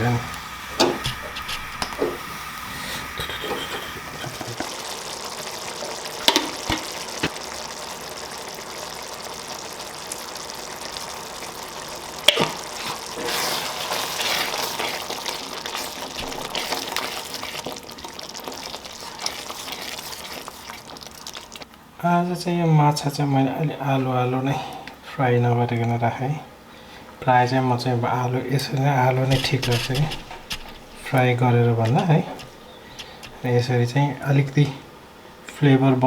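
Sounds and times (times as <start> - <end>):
food sizzling in a pan: 0.0 - 21.7, 28.5 - 35.2
utensil knocking: 0.7 - 2.4, 6.2 - 7.4, 29.2 - 33.5.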